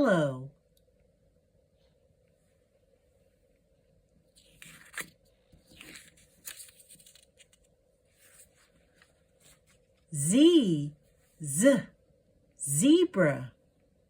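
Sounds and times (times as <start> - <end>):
rustling and scraping handling noises: 4.2 - 10.1.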